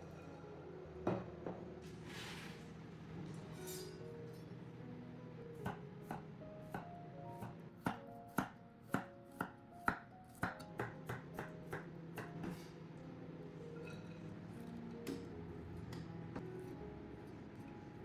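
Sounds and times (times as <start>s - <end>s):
soft background music: 0.0s - 18.0s
knife chopping on cutting board: 5.7s - 12.6s.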